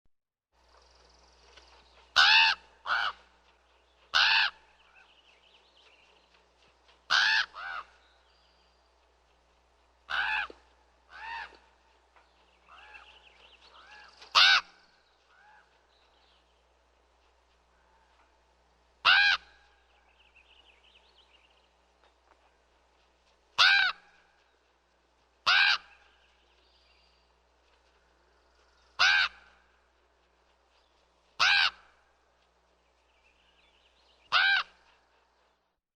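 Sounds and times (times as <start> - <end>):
raven calling harshly: 2.2 - 3.3, 4.1 - 4.7, 7.1 - 8.0, 10.1 - 11.7, 13.8 - 15.7, 19.0 - 19.6, 23.6 - 24.2, 25.4 - 26.1, 29.0 - 29.6, 31.4 - 32.0, 34.3 - 34.8.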